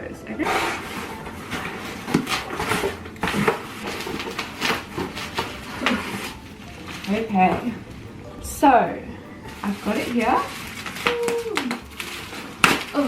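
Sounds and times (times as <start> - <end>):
cardboard box scraping and rustling: 0.4 - 7.8.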